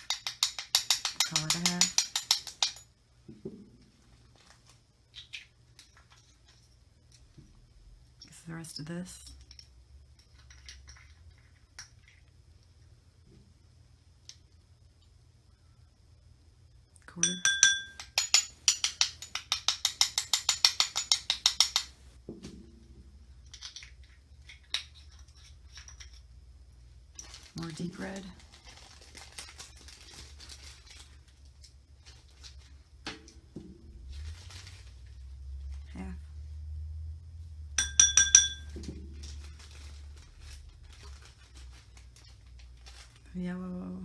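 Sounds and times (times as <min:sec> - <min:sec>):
measuring spoon tapping container: 0:17.2 - 0:18.9, 0:37.8 - 0:38.8.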